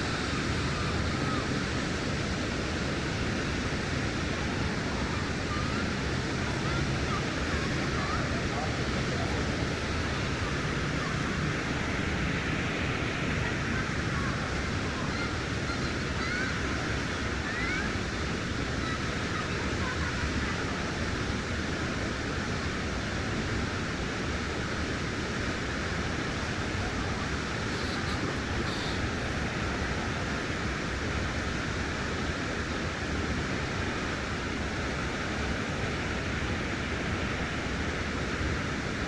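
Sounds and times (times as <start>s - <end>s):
waterfall roaring: 0.0s - 39.0s
faint high chirps: 26.1s - 30.1s.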